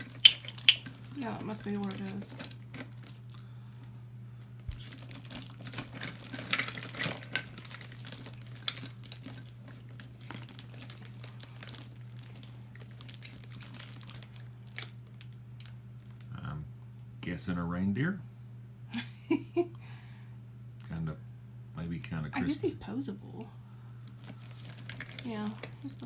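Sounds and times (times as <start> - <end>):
toys clicking: 0.0 - 2.5
packaging crinkling: 0.0 - 3.4, 4.7 - 16.3, 24.0 - 26.0
steady low hum: 0.0 - 26.0.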